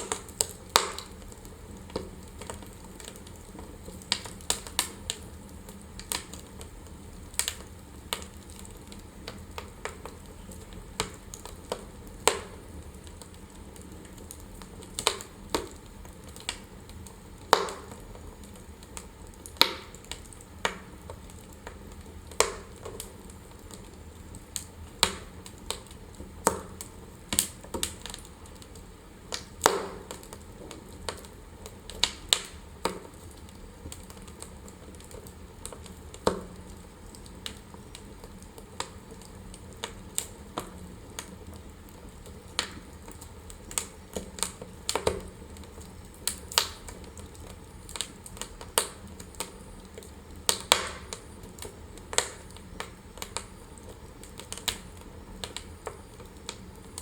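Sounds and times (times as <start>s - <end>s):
wood fire crackling and popping: 0.0s - 57.0s.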